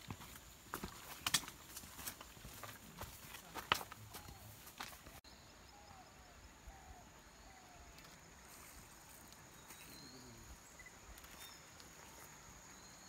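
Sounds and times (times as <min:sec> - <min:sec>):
faint outdoor hiss: 0:00.0 - 0:13.0.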